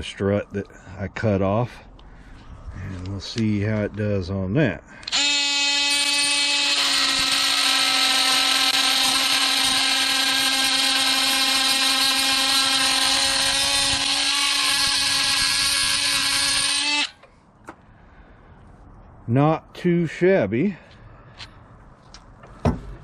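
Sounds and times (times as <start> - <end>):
multi-tool cutting metal: 5.0 - 17.2.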